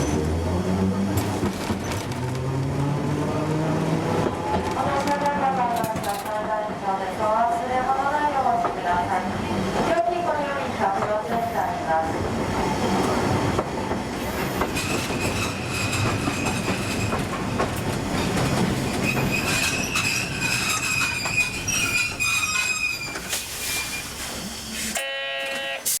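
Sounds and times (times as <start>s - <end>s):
tram running noise: 0.0s - 25.0s
high wheel squeal: 18.9s - 24.2s.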